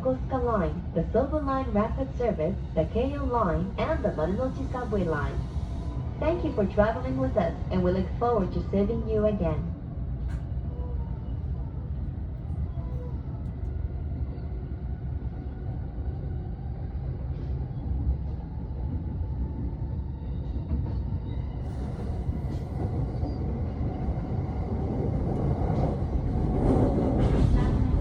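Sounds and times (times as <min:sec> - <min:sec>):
electric train rumbling: 0:00.0 - 0:28.0.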